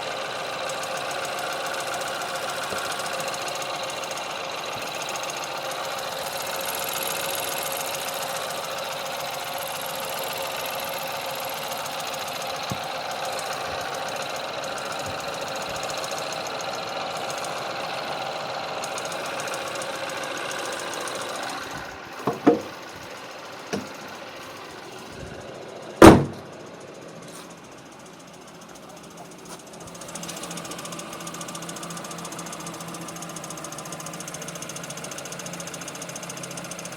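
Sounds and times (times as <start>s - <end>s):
car engine idling: 0.0s - 36.9s
loud thump: 22.2s - 22.7s, 26.0s - 26.5s
sharp knocks: 22.2s - 22.8s, 23.7s - 24.0s, 26.0s - 26.5s.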